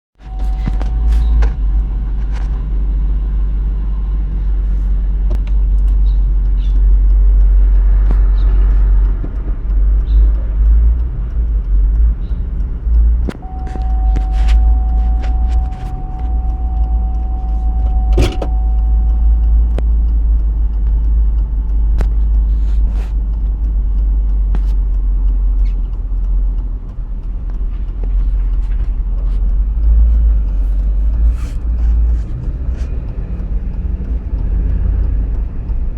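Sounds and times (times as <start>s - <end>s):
vehicle low rumble: 0.2s - 35.9s.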